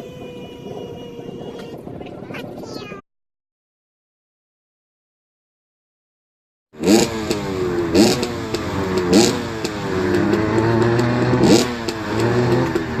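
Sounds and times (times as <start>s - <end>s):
motorcycle engine revving: 6.8s - 13.0s.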